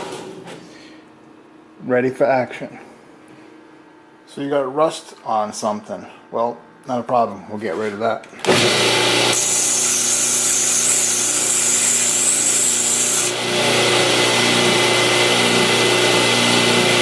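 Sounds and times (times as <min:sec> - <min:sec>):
grinder motor hum: 0:08.4 - 0:17.0
belt grinder grinding steel: 0:08.5 - 0:17.0.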